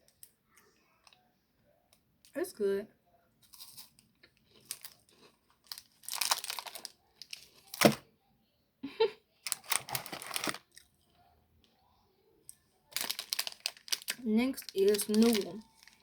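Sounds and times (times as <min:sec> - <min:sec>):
plastic wrapper tearing and crinkling: 0:03.6 - 0:08.0, 0:09.4 - 0:10.8, 0:12.9 - 0:16.0.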